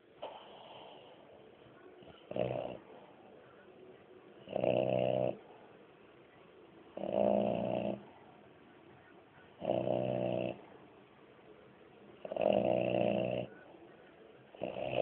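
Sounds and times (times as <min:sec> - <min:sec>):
dog snoring: 0:02.0 - 0:02.9, 0:04.4 - 0:05.4, 0:07.0 - 0:08.1, 0:09.6 - 0:10.6, 0:12.2 - 0:13.6, 0:14.6 - 0:15.0.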